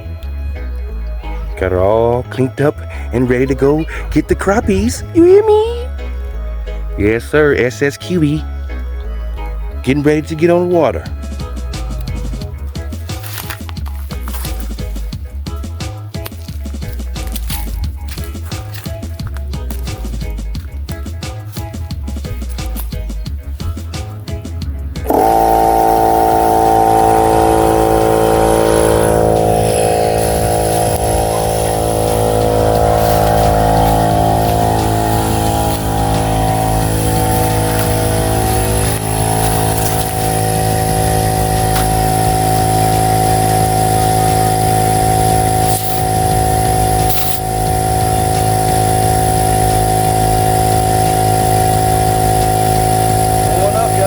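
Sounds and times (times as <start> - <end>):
air compressor running: 11.3 - 54.0.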